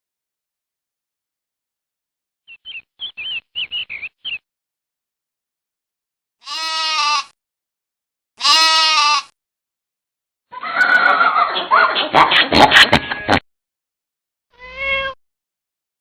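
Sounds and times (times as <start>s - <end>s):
small bird chirping: 2.5s - 4.4s
sheep bleating: 6.4s - 7.4s, 8.4s - 9.4s.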